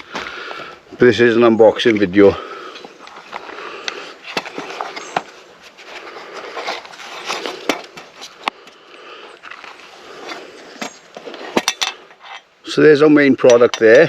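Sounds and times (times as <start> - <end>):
cardboard box rustling and scraping: 2.8 - 8.5, 9.4 - 11.6.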